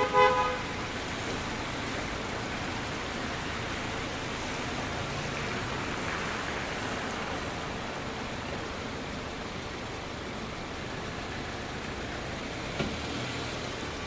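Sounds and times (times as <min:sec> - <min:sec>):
car horn toot: 0:00.0 - 0:00.9
rain hiss on a street: 0:00.0 - 0:14.0.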